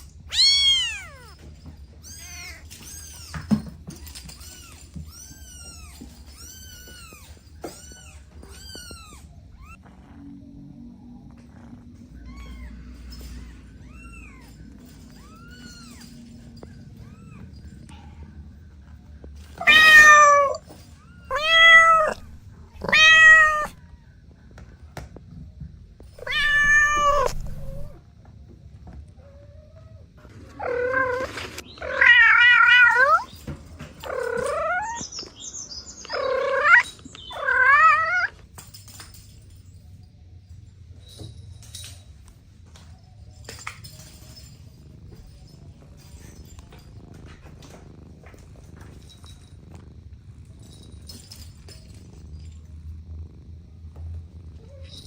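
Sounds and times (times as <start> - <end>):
low background hum: 0.0 - 55.0
cat meowing: 0.3 - 1.4, 4.2 - 9.9, 12.1 - 12.8, 19.6 - 24.0, 26.2 - 28.0, 30.6 - 33.3, 34.0 - 35.1, 36.0 - 38.3.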